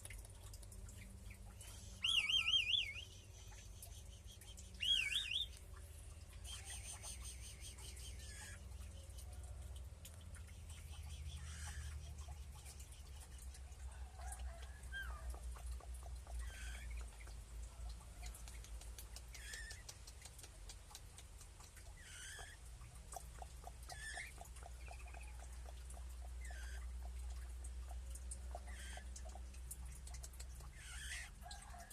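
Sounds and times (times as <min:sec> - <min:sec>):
small clicks and ticks: 0:00.0 - 0:02.0, 0:03.3 - 0:31.9
birds giving falling calls: 0:02.0 - 0:03.0, 0:04.8 - 0:05.5, 0:19.4 - 0:19.9.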